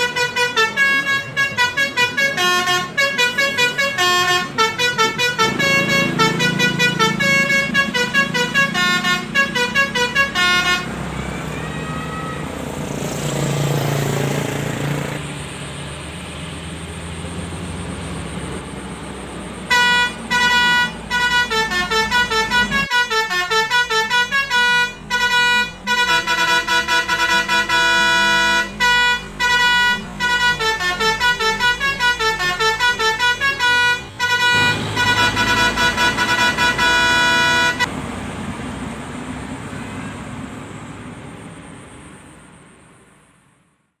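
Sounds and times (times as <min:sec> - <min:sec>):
musical bus horn: 0:00.0 - 0:12.8, 0:19.7 - 0:37.9
traffic noise: 0:00.0 - 0:44.0.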